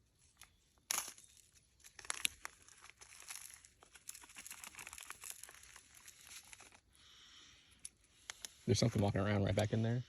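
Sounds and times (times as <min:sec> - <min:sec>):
plastic packaging crinkling: 0:00.2 - 0:06.8.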